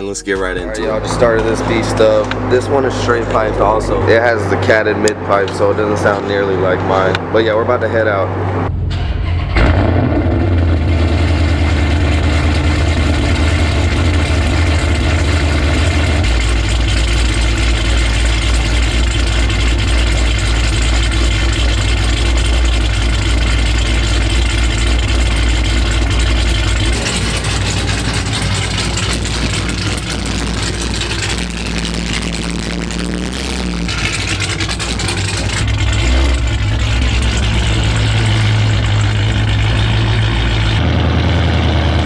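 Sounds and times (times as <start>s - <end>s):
car exhaust idling loud and deep: 0.0s - 42.0s.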